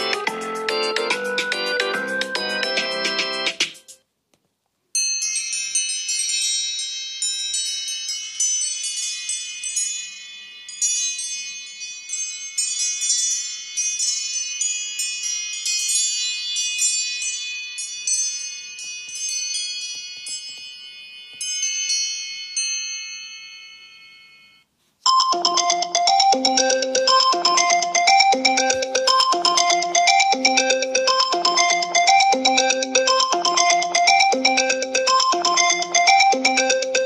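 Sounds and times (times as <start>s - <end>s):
phone ringtone chime notes: 20.5s - 37.0s.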